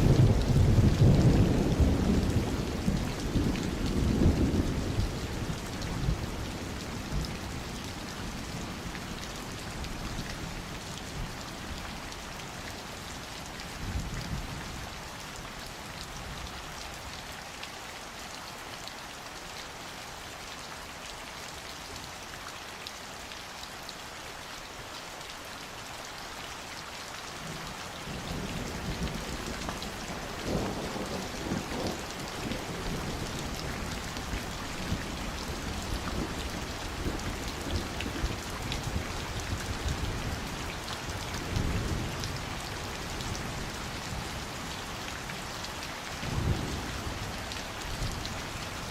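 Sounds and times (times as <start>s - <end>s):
rain pattering: 0.0s - 48.9s
thunder rumbling: 28.1s - 38.3s.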